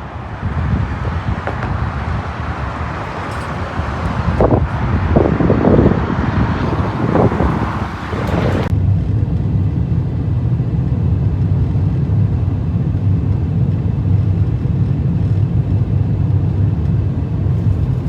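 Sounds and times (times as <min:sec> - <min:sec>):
car driving rumble inside cabin: 0:00.0 - 0:08.7
wind buffeting microphone: 0:00.0 - 0:08.7.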